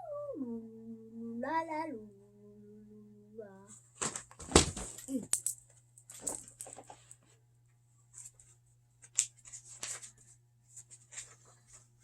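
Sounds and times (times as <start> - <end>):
paper pages rustling: 8.2 - 11.9.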